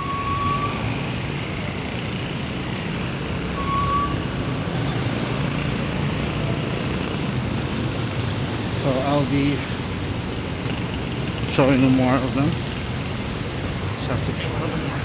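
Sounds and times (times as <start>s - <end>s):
city traffic rumble: 0.0s - 15.0s.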